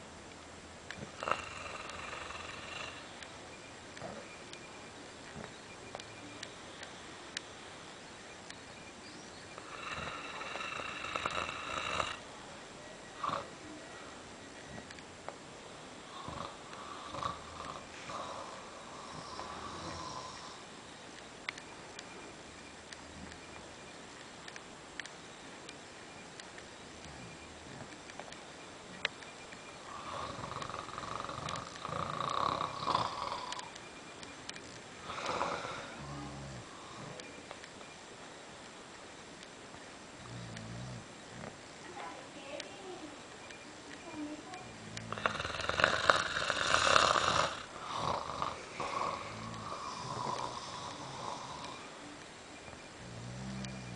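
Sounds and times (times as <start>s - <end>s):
person snoring: 1.1s - 3.1s, 9.6s - 12.2s, 13.2s - 13.5s, 16.0s - 20.7s, 29.9s - 33.7s, 35.0s - 37.2s, 44.8s - 52.0s, 53.0s - 53.9s.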